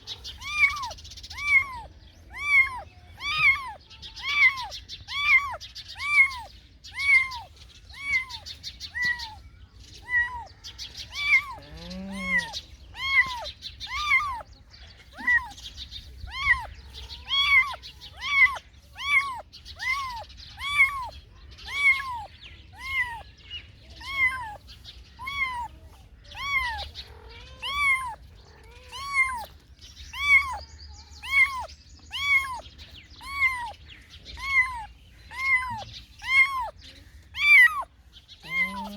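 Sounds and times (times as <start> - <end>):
cat meowing: 0.0 - 9.4, 10.0 - 14.4, 15.1 - 15.6, 16.2 - 23.3, 24.0 - 32.6, 33.2 - 38.9
low drawn-out cat call: 11.1 - 14.4, 25.2 - 32.6, 34.4 - 36.8, 37.4 - 38.9.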